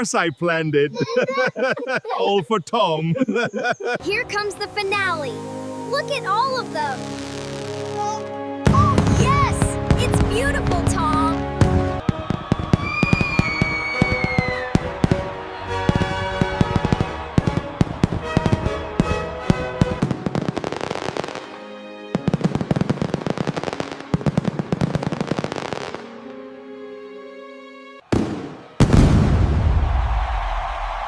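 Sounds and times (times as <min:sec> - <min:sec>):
background music: 0:00.0 - 0:31.0
fireworks bangs and crackles: 0:07.1 - 0:26.1, 0:28.1 - 0:31.0.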